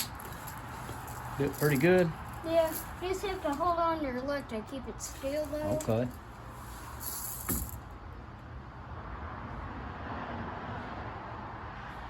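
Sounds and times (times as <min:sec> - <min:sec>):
rain hissing: 0:05.0 - 0:07.8.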